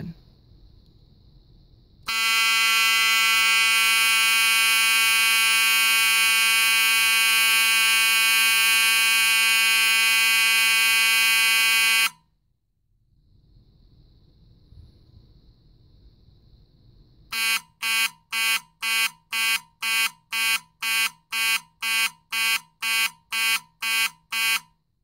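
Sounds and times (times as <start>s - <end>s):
fire alarm horn blast: 2.1s - 12.2s, 17.3s - 24.8s.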